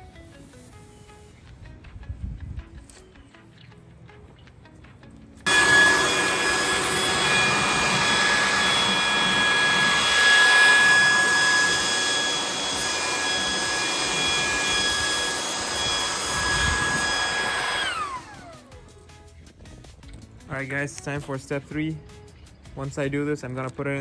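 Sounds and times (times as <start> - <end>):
electric blower whining: 5.4 - 19.0.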